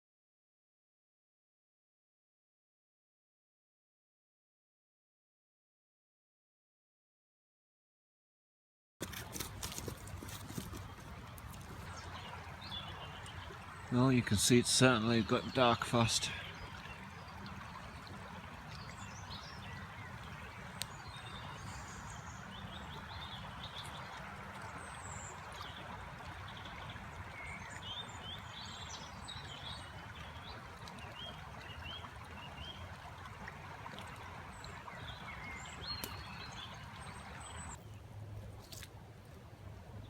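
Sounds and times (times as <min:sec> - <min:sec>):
river flowing: 0:09.0 - 0:40.0.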